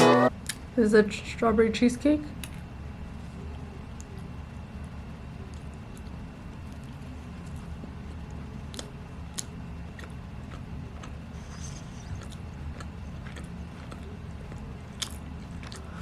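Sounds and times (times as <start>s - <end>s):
steady low hum: 0.0s - 16.0s
person chewing food: 5.5s - 16.0s.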